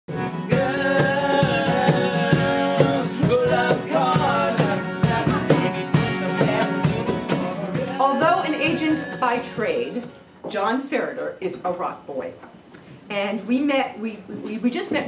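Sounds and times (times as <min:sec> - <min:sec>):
steady drum beat: 0:00.1 - 0:10.2
guitar: 0:00.1 - 0:13.0
person singing: 0:00.4 - 0:10.2.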